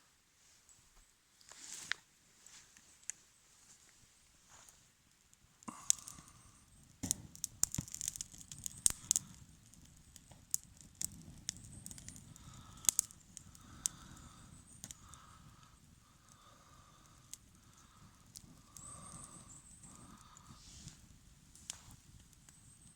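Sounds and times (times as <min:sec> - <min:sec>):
campfire crackling and popping: 0:05.1 - 0:22.9.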